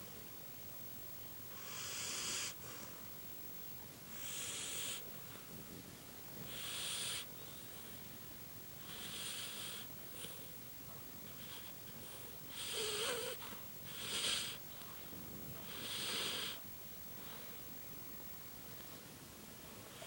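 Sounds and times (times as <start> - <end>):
dog snoring: 1.5 - 3.0, 4.1 - 5.1, 6.4 - 8.0, 8.8 - 10.6, 11.3 - 14.6, 15.5 - 16.6.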